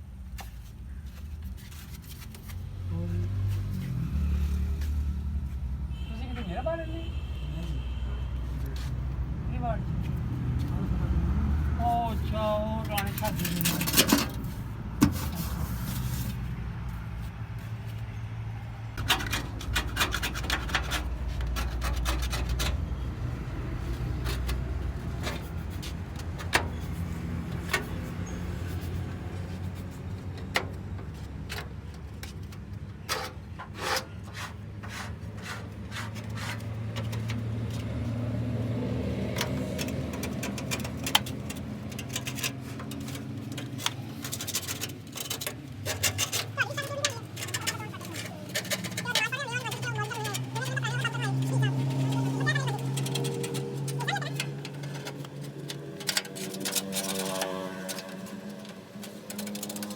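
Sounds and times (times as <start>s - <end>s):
scrubbing metal casing: 11.7s - 18.1s, 19.0s - 38.3s, 39.2s - 59.9s.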